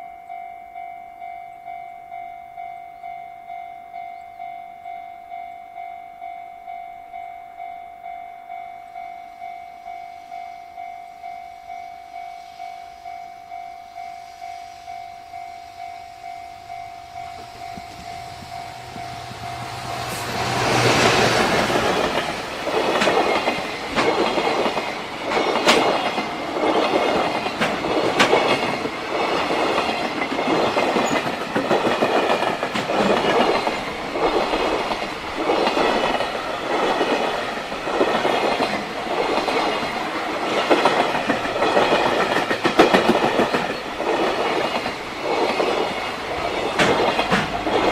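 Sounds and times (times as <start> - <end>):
level crossing warning bell: 0.0 - 47.9
freight train wagons clattering: 16.3 - 47.9.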